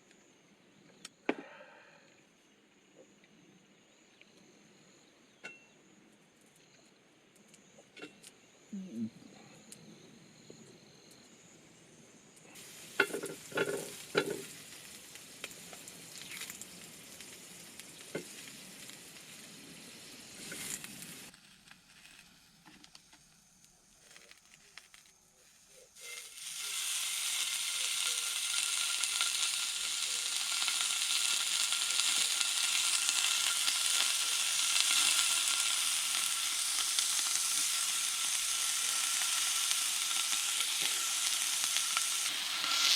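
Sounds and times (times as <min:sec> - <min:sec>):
food sizzling in a frying pan: 0:12.5 - 0:42.9.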